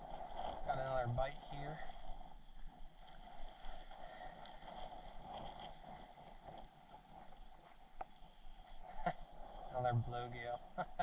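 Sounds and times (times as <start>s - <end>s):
light ticks: 3.0s - 8.2s.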